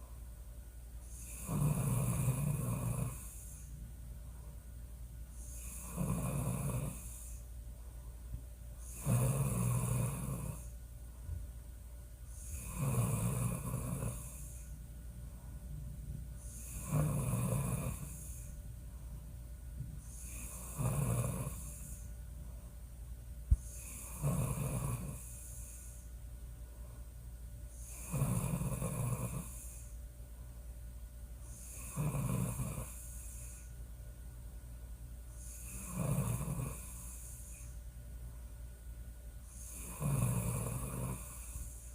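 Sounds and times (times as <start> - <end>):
steady low hum: 0.0 - 41.9
woman snoring: 1.0 - 3.7, 5.3 - 7.5, 8.8 - 10.7, 12.3 - 14.8, 16.4 - 18.6, 20.0 - 22.2, 23.5 - 26.1, 27.8 - 30.0, 31.5 - 33.7, 35.4 - 37.8, 39.5 - 41.9.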